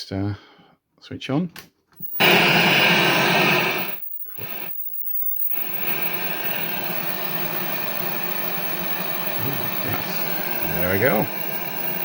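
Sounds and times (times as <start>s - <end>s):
television static hiss: 5.5s - 12.0s.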